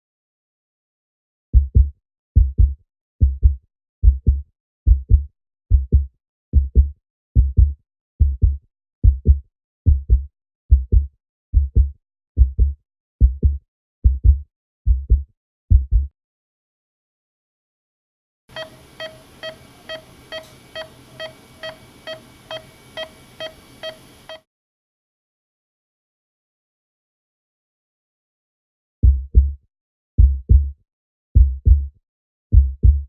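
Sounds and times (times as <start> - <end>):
heartbeat: 1.5 - 16.1, 29.0 - 29.6, 30.2 - 30.7, 31.4 - 31.9, 32.5 - 33.0.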